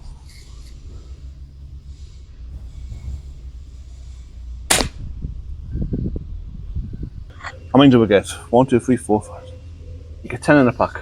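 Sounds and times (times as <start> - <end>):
faint low hum: 0.0 - 11.0
air pistol shot: 2.6 - 5.2.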